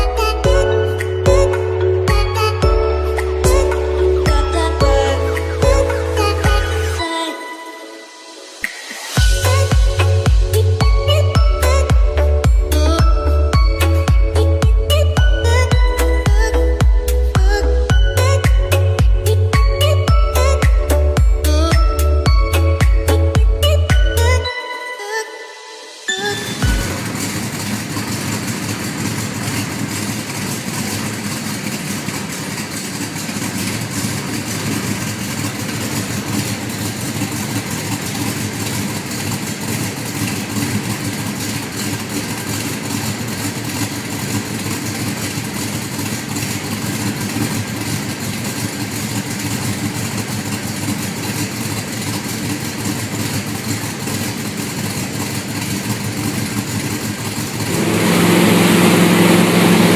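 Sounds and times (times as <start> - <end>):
car engine idling: 0.0 - 7.0, 9.2 - 24.4, 26.6 - 59.9.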